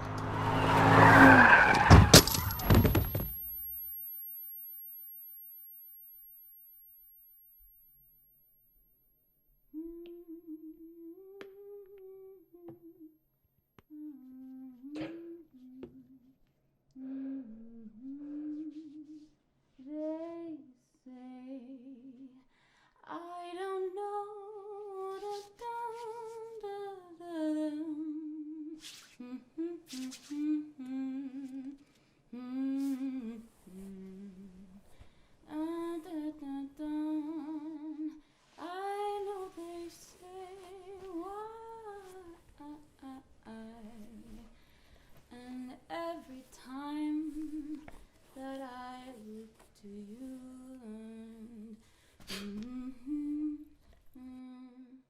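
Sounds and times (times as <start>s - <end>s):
woman humming: 9.7s - 13.2s, 13.9s - 16.3s.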